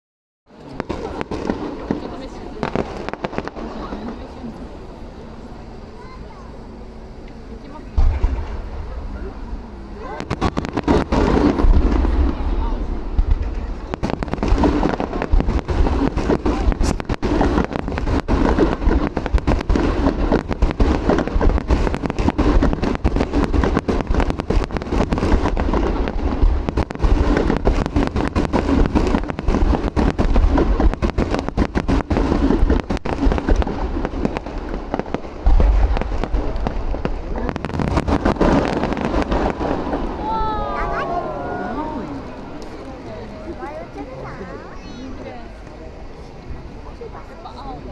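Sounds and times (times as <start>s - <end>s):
fireworks bangs and crackling: 0.5s - 47.9s
heavy firework boom: 7.8s - 43.1s.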